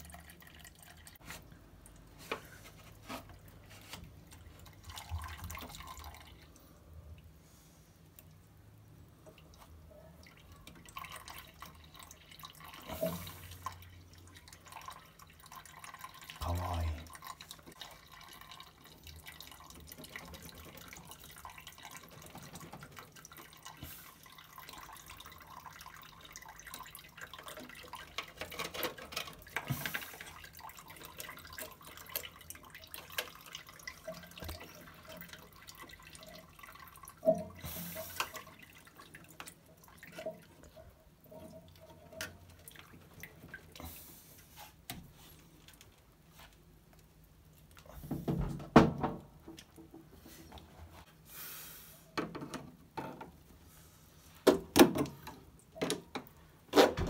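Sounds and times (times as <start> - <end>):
water dripping in drum: 4.2 - 7.3, 8.2 - 44.0.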